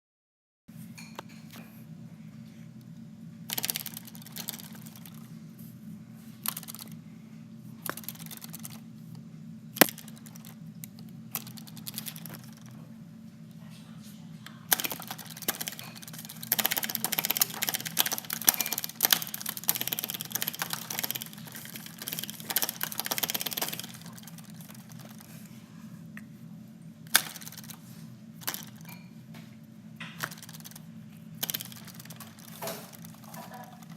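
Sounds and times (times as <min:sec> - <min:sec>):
steady low hum: 0:00.7 - 0:33.9.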